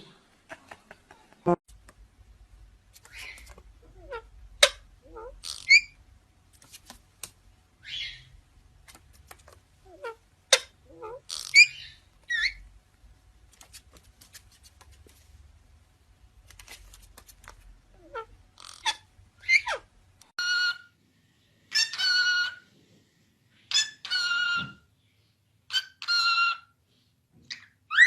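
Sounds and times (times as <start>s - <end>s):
parrot chirping and whistling: 5.5s - 6.0s, 7.8s - 8.3s, 11.4s - 12.6s, 25.7s - 26.6s
harsh parrot calls: 18.0s - 20.9s, 21.7s - 22.7s, 23.7s - 24.7s, 25.7s - 26.7s.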